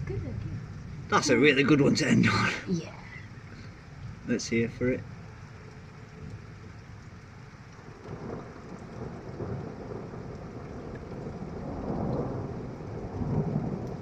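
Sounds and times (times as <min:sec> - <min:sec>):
distant thunder rumbling: 0:00.0 - 0:14.0
steady rain: 0:00.0 - 0:14.0.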